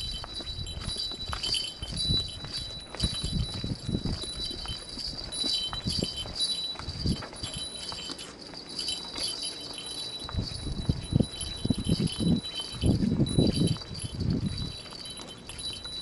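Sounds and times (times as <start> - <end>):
footsteps thudding on path: 0.0 - 16.0
light bell tinkling: 0.0 - 16.0.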